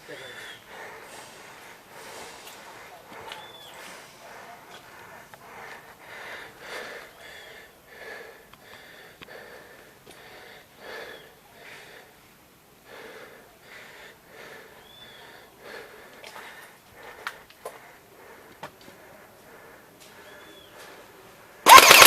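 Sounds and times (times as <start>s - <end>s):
person breathing: 0.0s - 21.7s
sharp clicks: 21.7s - 22.0s.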